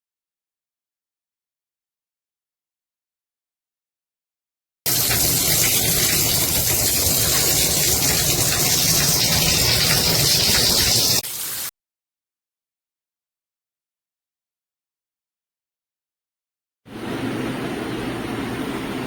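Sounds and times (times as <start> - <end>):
shower water spraying: 4.9 - 11.7.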